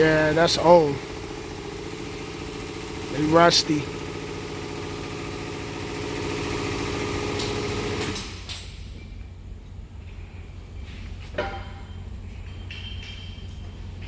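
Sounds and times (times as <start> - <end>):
engine idling: 0.0 - 8.5.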